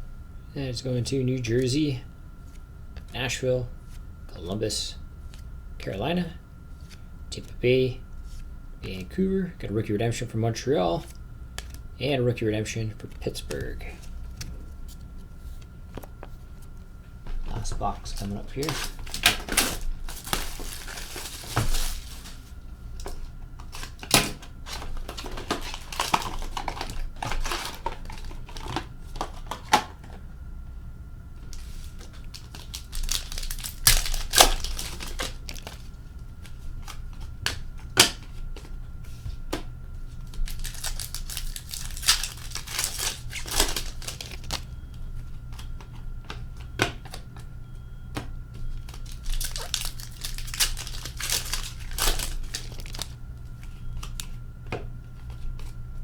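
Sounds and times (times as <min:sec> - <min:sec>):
wrappers crinkling: 0:17.3 - 0:30.2, 0:31.4 - 0:37.7, 0:40.2 - 0:44.8, 0:48.7 - 0:54.3
foil packs tearing: 0:17.6 - 0:30.1, 0:31.5 - 0:36.0, 0:40.3 - 0:44.7, 0:48.9 - 0:53.2.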